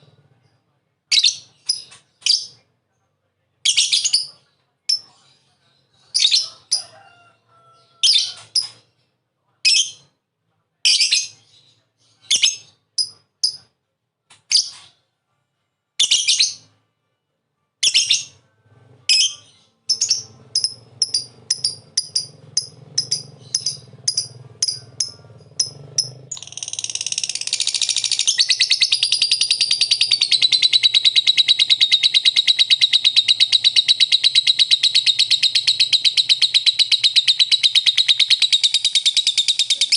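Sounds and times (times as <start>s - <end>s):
lovebird chirping and trilling: 1.1s - 2.6s, 3.6s - 5.1s, 6.1s - 6.7s, 8.0s - 8.8s, 12.2s - 13.7s, 16.0s - 16.7s, 17.8s - 18.4s, 19.1s - 39.9s.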